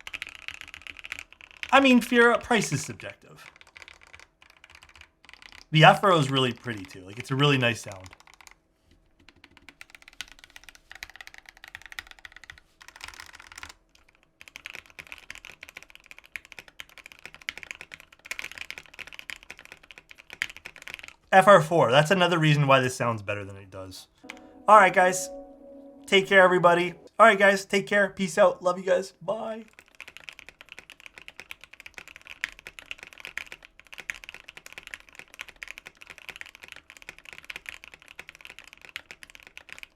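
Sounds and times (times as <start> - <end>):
mechanical keyboard typing: 0.0 - 2.0, 3.4 - 8.6, 9.2 - 21.6, 29.7 - 39.9.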